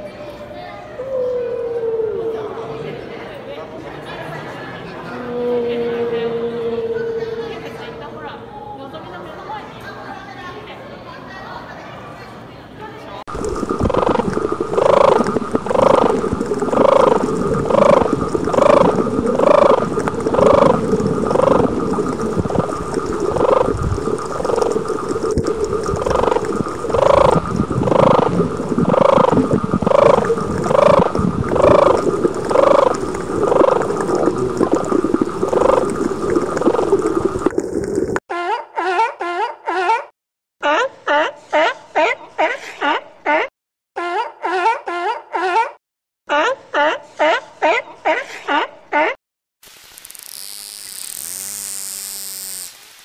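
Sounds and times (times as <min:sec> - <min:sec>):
animal croaking calls: 0:13.3 - 0:37.9
steady hiss: 0:49.6 - 0:53.0.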